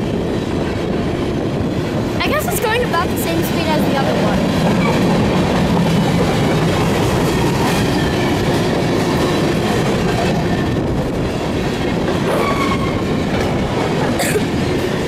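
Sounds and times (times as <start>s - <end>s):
train wheels rumbling on track: 0.0s - 15.0s.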